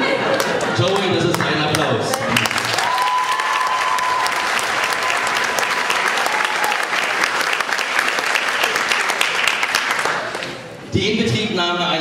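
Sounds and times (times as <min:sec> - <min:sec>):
audience applauding: 0:00.3 - 0:10.7.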